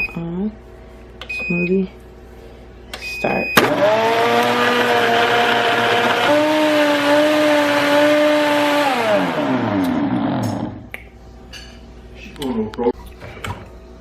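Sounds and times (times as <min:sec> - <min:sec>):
blender motor crushing ice: 0:03.6 - 0:10.8.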